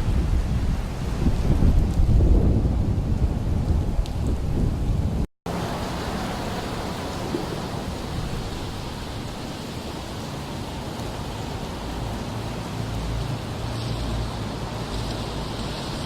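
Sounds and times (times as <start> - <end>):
wind buffeting microphone: 0.0 - 16.0
heavy rain hiss: 5.5 - 16.0.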